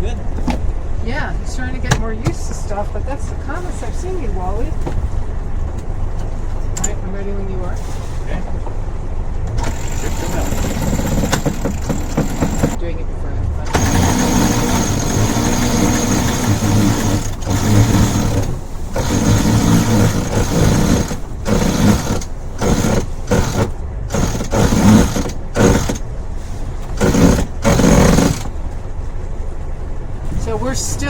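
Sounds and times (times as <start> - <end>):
electric winch motor whine: 9.5 - 12.8, 13.6 - 28.7.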